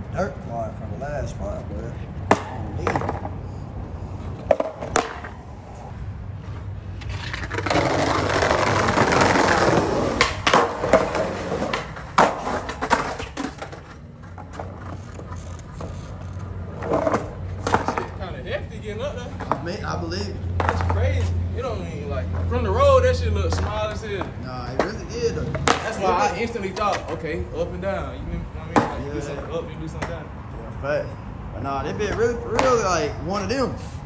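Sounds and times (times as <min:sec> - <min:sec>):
skateboard wheels rolling: 0:01.9 - 0:03.4, 0:04.0 - 0:19.8
skateboard clacks and landing knocks: 0:02.3 - 0:03.4, 0:04.4 - 0:05.4, 0:07.0 - 0:15.8, 0:16.6 - 0:18.2, 0:20.6 - 0:21.0, 0:24.8 - 0:26.2, 0:28.8 - 0:29.0.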